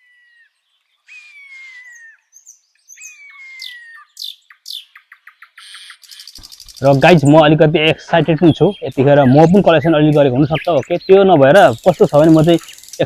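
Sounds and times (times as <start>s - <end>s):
bird chirps: 0.0s - 13.0s
rapid short bird ticks: 4.2s - 7.2s, 11.8s - 13.0s.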